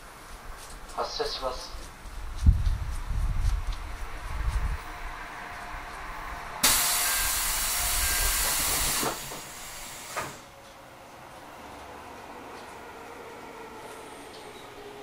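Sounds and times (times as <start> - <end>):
compressed air hissing: 6.6 - 10.4.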